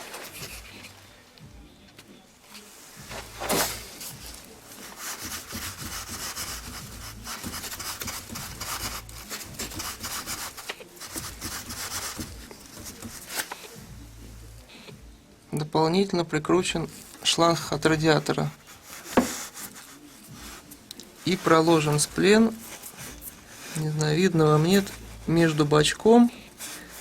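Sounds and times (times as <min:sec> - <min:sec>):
rubbing and scraping handling: 0:00.0 - 0:01.3, 0:02.4 - 0:14.9, 0:16.6 - 0:27.0.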